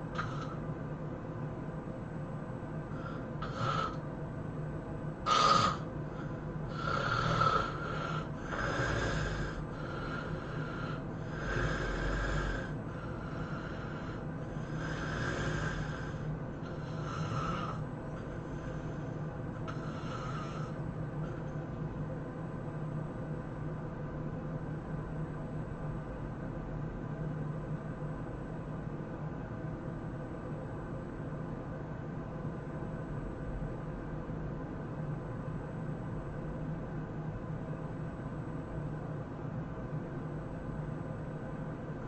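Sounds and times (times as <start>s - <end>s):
person snoring: 0.0s - 0.6s, 2.9s - 4.0s, 5.3s - 17.8s, 19.7s - 20.8s
steady low hum: 0.0s - 42.0s.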